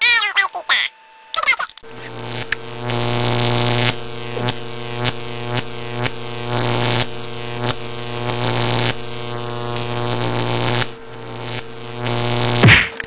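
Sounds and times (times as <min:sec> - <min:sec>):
electrical buzz with hum: 0:00.4 - 0:13.0.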